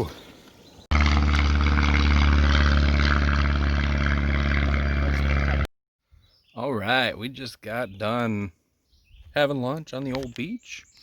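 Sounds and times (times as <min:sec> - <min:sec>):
loud engine drone: 0:00.9 - 0:05.7.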